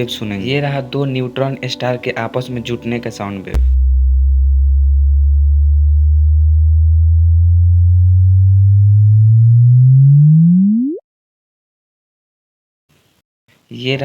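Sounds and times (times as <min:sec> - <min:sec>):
deep hum rising in pitch: 0:03.6 - 0:11.0.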